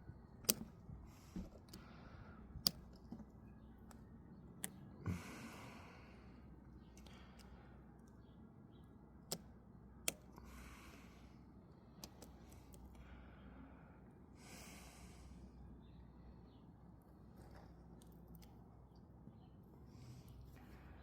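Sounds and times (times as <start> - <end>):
soft breathing: 1.0 - 2.7, 5.0 - 8.3, 10.4 - 17.8, 19.8 - 21.0.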